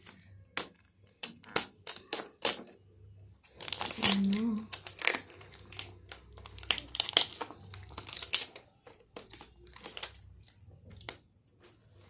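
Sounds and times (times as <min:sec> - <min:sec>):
plastic packaging crinkling: 0:03.5 - 0:11.8.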